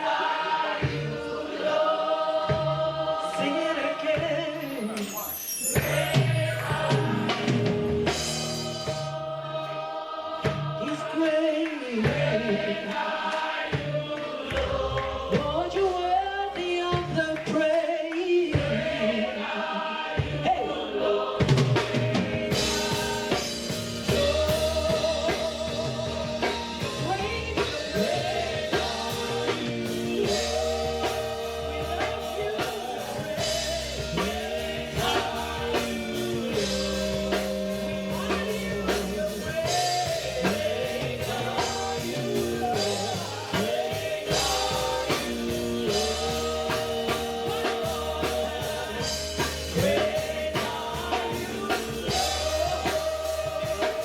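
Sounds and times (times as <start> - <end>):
church band playing: 0.0 - 54.0
people singing long notes: 0.0 - 54.0.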